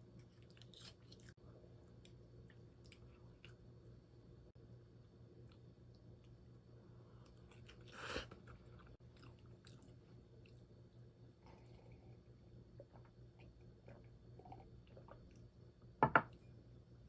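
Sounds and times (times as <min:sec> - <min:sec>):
crunch: 0:00.1 - 0:01.3
person chewing food: 0:07.2 - 0:10.8.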